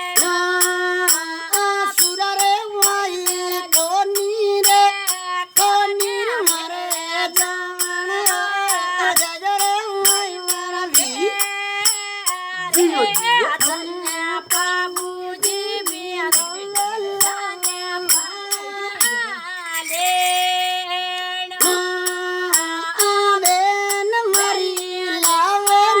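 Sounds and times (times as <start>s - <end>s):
sharp percussion beat: 0.0s - 20.7s, 21.6s - 26.0s
person singing long notes: 10.7s - 16.2s.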